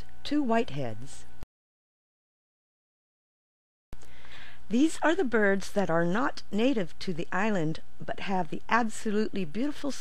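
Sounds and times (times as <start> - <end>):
steady low hum: 0.0 - 1.4, 4.0 - 10.0.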